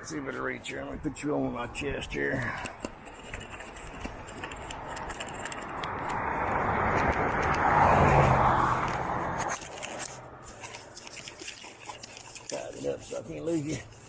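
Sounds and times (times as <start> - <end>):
vehicle passing by: 5.6 - 10.4.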